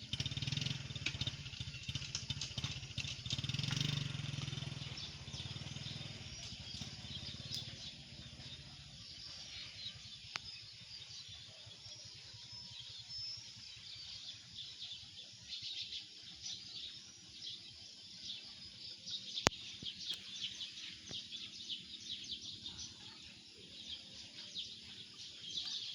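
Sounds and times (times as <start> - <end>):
low vehicle rumble: 0.0 - 9.2
birds chirping: 0.0 - 25.9.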